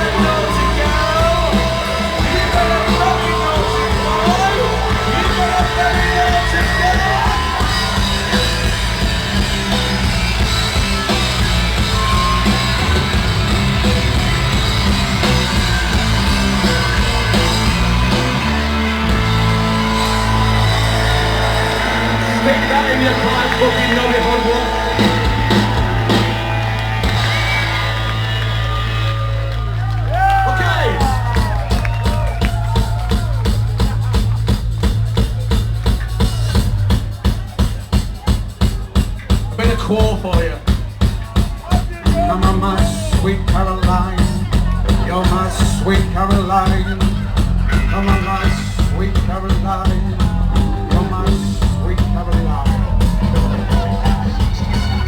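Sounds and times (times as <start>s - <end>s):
person singing: 0.0s - 7.6s
drum hits: 0.0s - 28.3s
heavy bass: 0.0s - 55.0s
loud live rock music: 0.0s - 55.0s.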